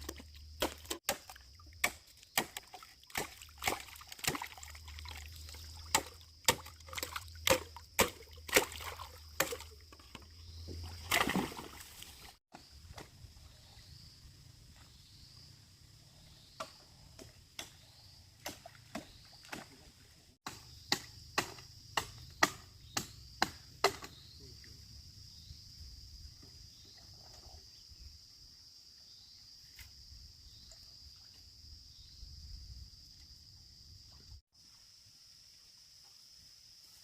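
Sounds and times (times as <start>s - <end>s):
tool striking bamboo: 0.1s - 4.4s, 5.9s - 8.7s, 20.4s - 24.2s.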